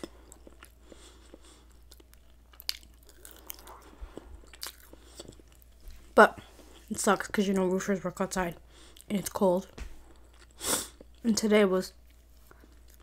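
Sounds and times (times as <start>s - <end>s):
close chewing with mouth clicks: 0.0s - 6.9s, 10.0s - 11.3s, 12.0s - 13.0s.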